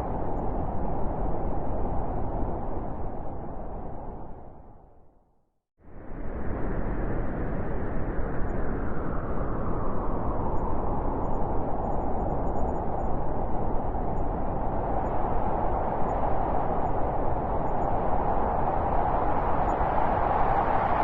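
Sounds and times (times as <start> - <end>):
blizzard wind rushing: 5.9 - 21.0.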